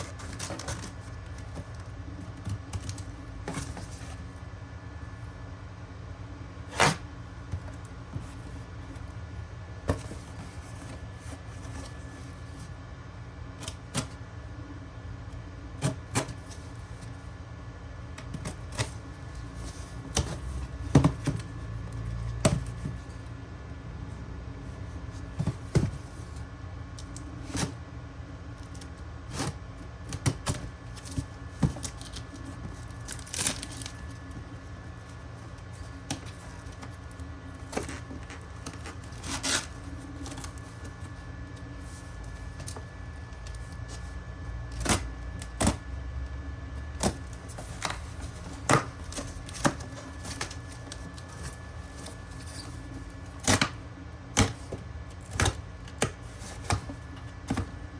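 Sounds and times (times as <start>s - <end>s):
low steady hum: 0.0s - 57.9s.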